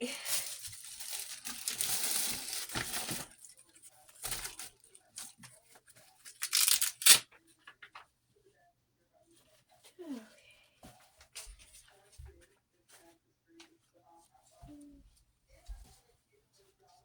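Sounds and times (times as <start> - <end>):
rustling of small objects: 0.0 - 7.8.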